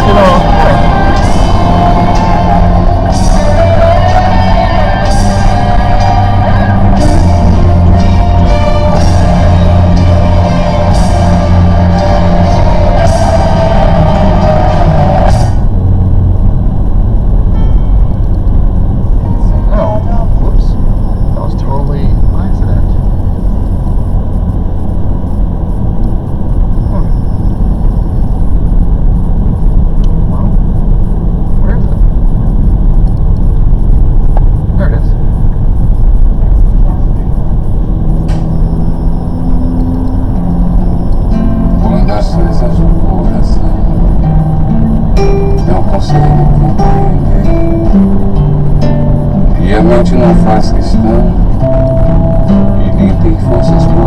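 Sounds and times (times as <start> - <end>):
bass line: 0.0 - 54.0
engine and tyre rumble: 0.0 - 54.0
rock music with singing: 0.0 - 54.0.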